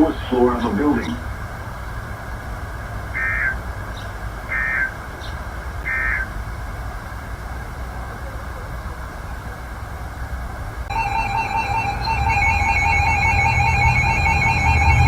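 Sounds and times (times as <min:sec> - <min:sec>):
radio hum and hiss: 0:00.0 - 0:02.0.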